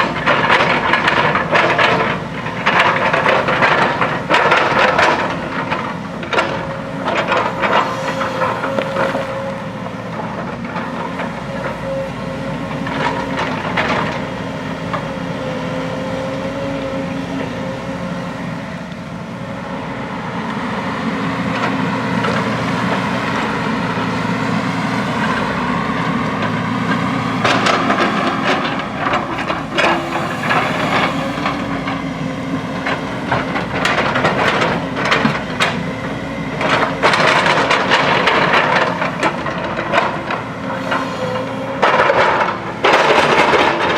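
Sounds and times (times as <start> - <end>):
backhoe diesel engine running: 0.0 - 43.9
bucket knocking and scraping rock: 27.0 - 32.0.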